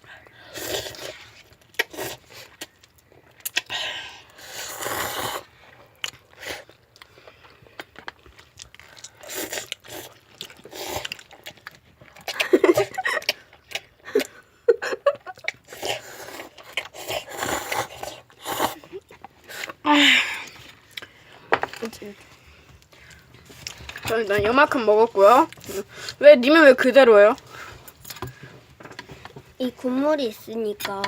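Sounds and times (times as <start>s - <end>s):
person slurping noodles: 0.5s - 2.5s, 4.1s - 5.5s, 9.1s - 11.2s, 15.6s - 19.8s.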